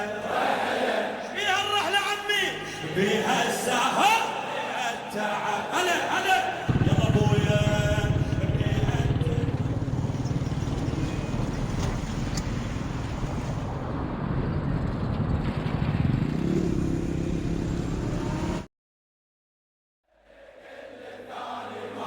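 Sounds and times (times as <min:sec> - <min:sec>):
road noise: 0:06.7 - 0:18.7
vehicle engine rumbling: 0:06.7 - 0:18.7.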